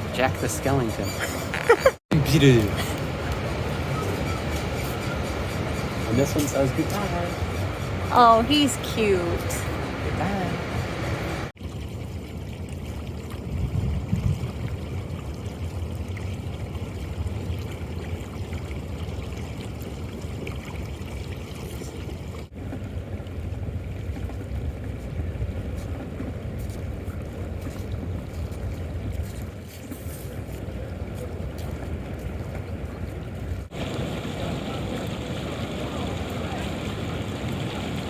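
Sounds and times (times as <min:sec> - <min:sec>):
ocean surf: 0:00.0 - 0:11.5, 0:33.7 - 0:38.0
wind buffeting microphone: 0:00.0 - 0:11.5, 0:13.5 - 0:15.1, 0:22.5 - 0:29.6, 0:30.2 - 0:38.0.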